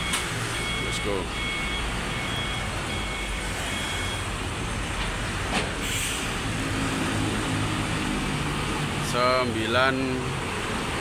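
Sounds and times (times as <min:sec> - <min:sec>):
beeping alarm: 0:00.0 - 0:04.4.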